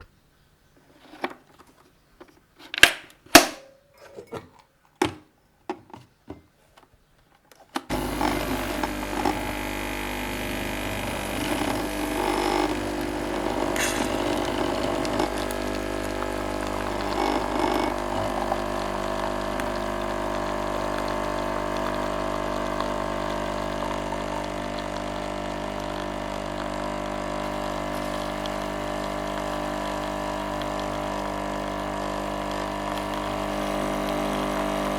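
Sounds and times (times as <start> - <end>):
coffee machine pump humming: 7.9 - 34.9.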